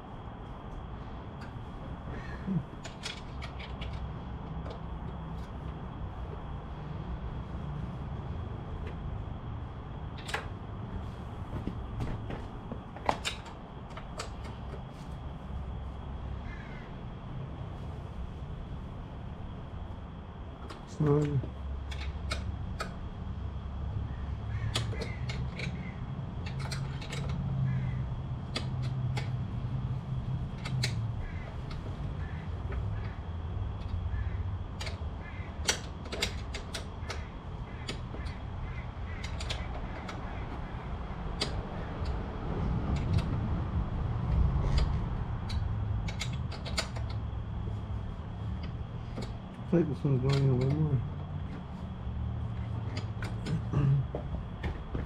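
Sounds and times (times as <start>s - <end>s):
low steady rumble: 0.0s - 55.0s
hand tools clicking and creaking: 1.4s - 6.4s, 11.6s - 15.2s, 20.6s - 23.2s, 24.4s - 55.0s
faint bird calls: 16.4s - 17.1s, 24.0s - 26.1s, 27.6s - 28.1s, 31.0s - 33.3s, 34.0s - 35.7s, 37.0s - 42.0s
hand tools clicking on bolts: 24.7s - 27.5s, 34.8s - 42.2s, 44.2s - 47.2s, 48.5s - 51.5s, 52.5s - 53.8s.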